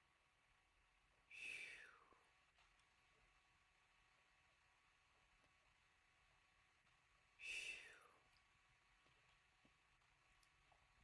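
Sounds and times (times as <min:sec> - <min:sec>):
recording hiss: 0:01.0 - 0:02.5, 0:07.2 - 0:08.8.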